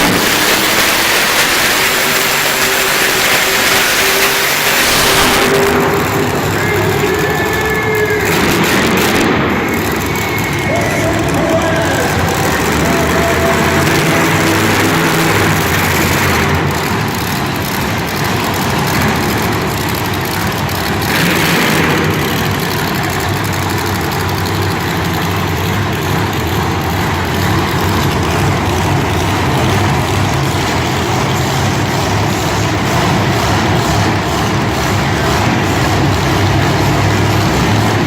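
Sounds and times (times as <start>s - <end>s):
dense noise wash: 0.0s - 38.0s
heavy vehicle engine running: 0.0s - 38.0s.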